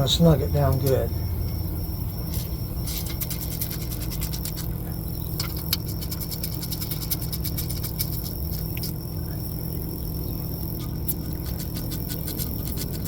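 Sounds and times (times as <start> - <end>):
steady low hum: 0.0 - 13.0
ratchet clicking: 2.3 - 8.9.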